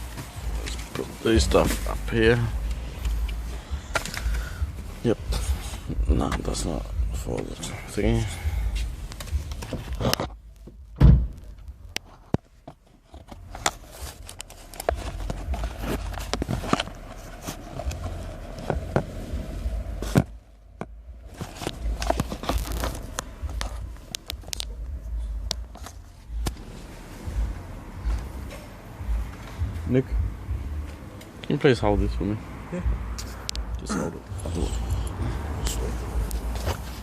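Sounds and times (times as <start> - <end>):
plastic parts clicking and rattling: 20.1 - 24.7.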